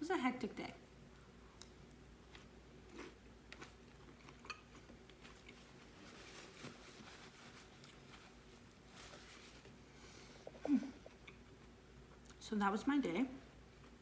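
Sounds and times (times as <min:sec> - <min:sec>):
quiet chewing: 0:01.5 - 0:06.0, 0:07.6 - 0:12.4.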